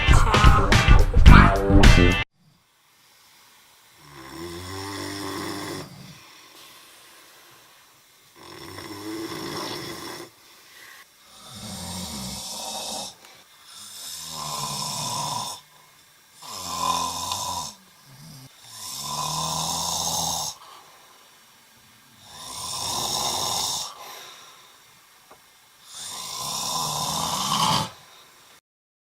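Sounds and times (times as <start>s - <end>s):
person snoring: 4.0s - 21.4s, 22.0s - 24.9s, 25.8s - 28.4s.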